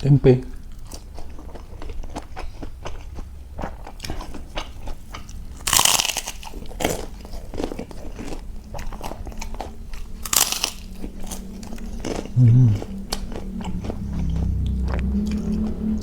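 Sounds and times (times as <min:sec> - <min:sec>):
person chewing crunchy food: 0:00.6 - 0:16.0.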